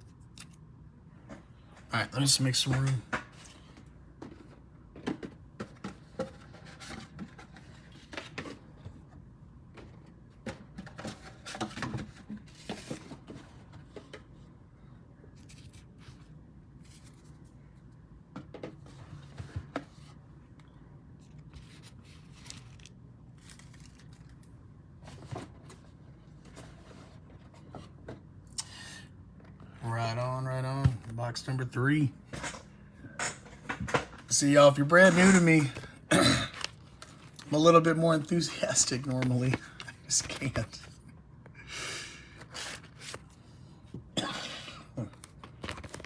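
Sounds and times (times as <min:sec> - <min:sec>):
cards clicking and rustling on table: 0:36.5 - 0:40.9, 0:45.1 - 0:46.0.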